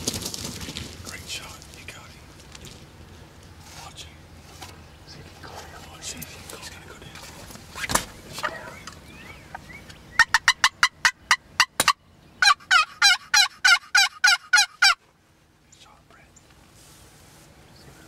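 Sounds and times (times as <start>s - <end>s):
turkey yelping: 8.4s - 15.0s.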